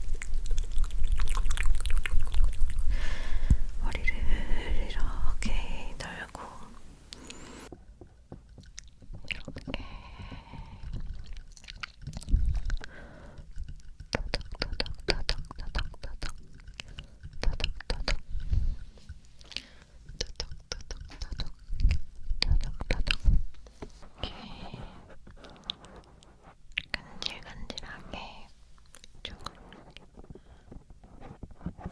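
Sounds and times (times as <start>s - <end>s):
wet mouth clicks and smacks: 0.0s - 5.3s, 10.9s - 23.4s
person whispering: 3.4s - 7.7s, 20.3s - 21.6s, 26.8s - 28.5s.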